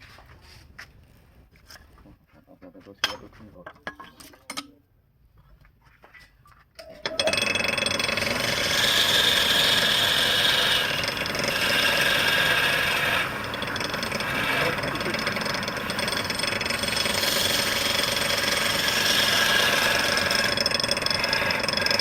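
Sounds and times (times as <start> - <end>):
woodturning lathe running: 6.9 - 22.0.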